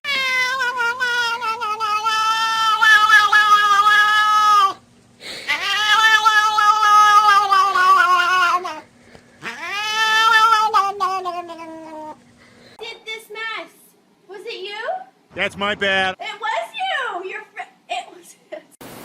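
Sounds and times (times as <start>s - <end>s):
cat yowling: 0.0s - 4.8s, 5.4s - 12.2s.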